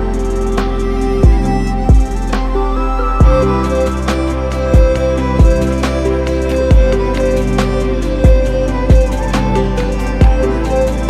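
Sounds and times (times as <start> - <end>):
melodic tones over drum beat: 0.0 - 11.0.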